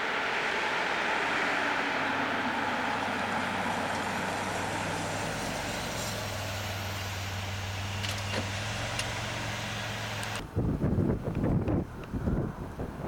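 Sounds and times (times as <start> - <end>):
vehicle engine humming: 0.0 - 12.8
wind buffeting microphone: 10.2 - 13.0.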